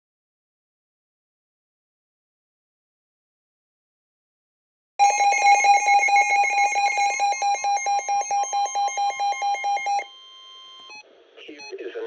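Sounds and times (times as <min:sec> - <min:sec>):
rapidly pulsing alarm beep: 0:05.0 - 0:11.0.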